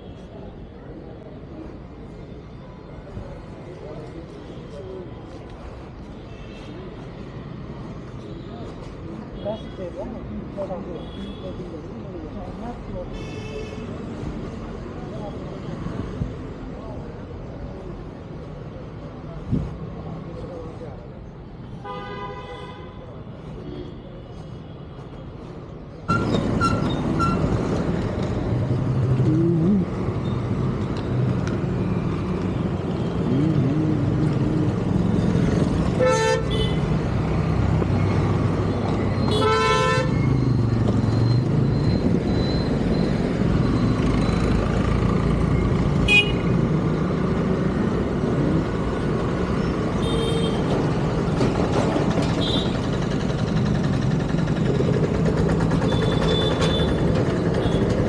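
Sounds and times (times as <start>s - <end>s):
busy road traffic: 0.0s - 58.0s
vehicle horns honking: 36.0s - 36.8s, 39.3s - 40.2s, 46.1s - 46.5s.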